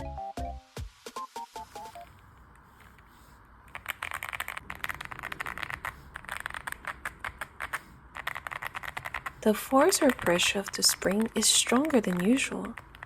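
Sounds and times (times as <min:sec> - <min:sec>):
fast typing on mechanical keyboard: 0:03.7 - 0:13.0.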